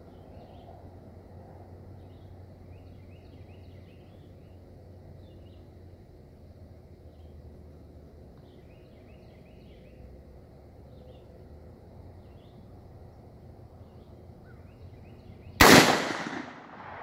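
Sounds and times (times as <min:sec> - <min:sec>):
steady low hum: 0:00.0 - 0:17.0
bird chirping: 0:02.0 - 0:04.6, 0:08.4 - 0:10.1, 0:12.2 - 0:12.7, 0:13.8 - 0:15.6.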